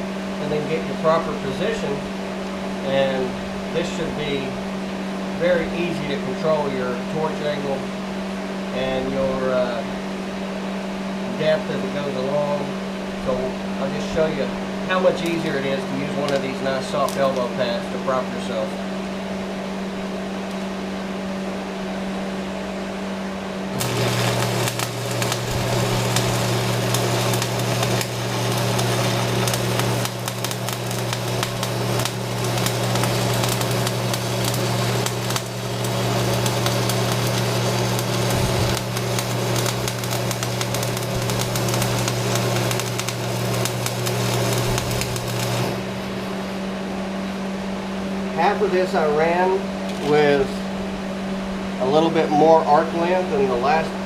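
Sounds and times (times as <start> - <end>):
low transformer hum: 0.0 - 54.0
welding arc crackling: 13.3 - 18.0, 23.7 - 47.0, 49.8 - 50.5.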